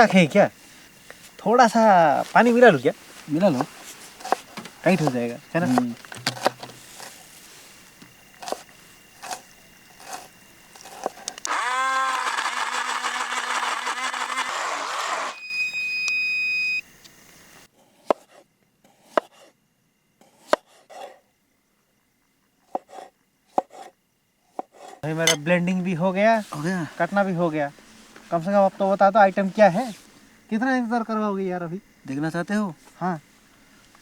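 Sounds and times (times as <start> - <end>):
blender motor whining: 11.4 - 16.6.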